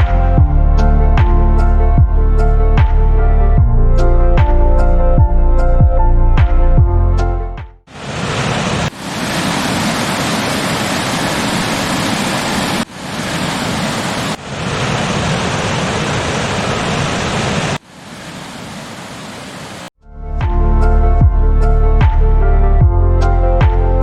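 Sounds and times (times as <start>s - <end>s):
waterfall rushing: 7.9s - 19.9s.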